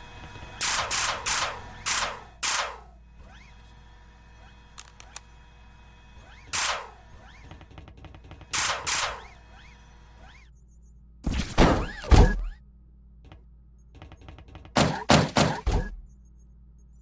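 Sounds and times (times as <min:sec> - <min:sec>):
blaster shots falling in pitch: 0:00.6 - 0:02.8, 0:08.6 - 0:09.3, 0:11.3 - 0:12.6
faint electronic hum: 0:15.9 - 0:17.0.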